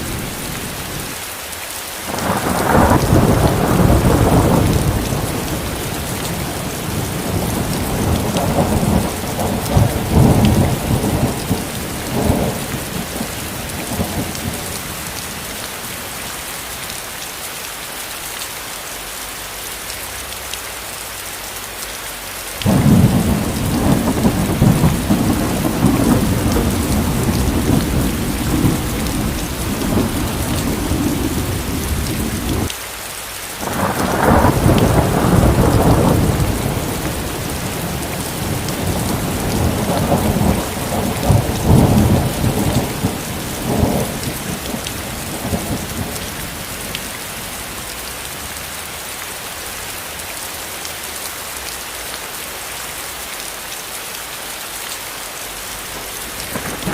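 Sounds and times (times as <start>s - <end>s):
steady rain: 0.0s - 56.9s
rolling thunder: 2.1s - 15.2s, 22.6s - 32.8s, 33.6s - 47.5s, 56.0s - 56.9s.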